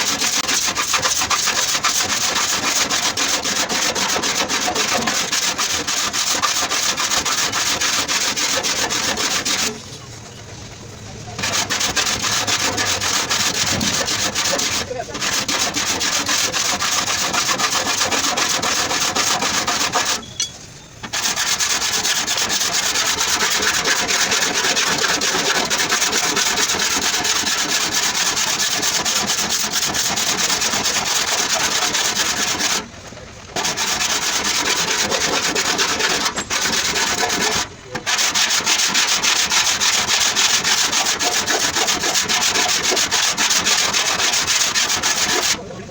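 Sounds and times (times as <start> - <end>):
sanding car body panel: 0.0 - 10.4, 11.3 - 20.2, 21.0 - 32.9, 33.6 - 45.8.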